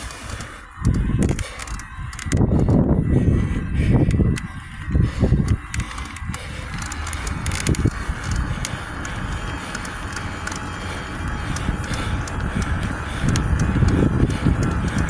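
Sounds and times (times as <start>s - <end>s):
bicycle tyres hissing: 0.0s - 0.8s, 4.6s - 15.0s
sharp clicks from bike: 0.0s - 2.9s, 3.9s - 15.0s.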